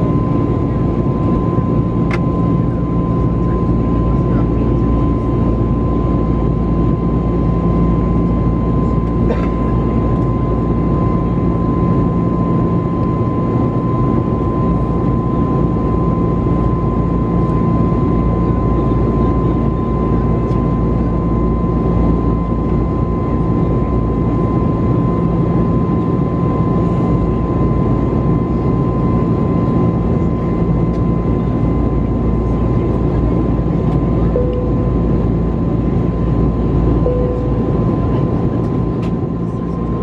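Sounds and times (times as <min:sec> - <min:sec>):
airplane cabin roar: 0:00.0 - 0:40.0
steady high hum: 0:33.0 - 0:40.0.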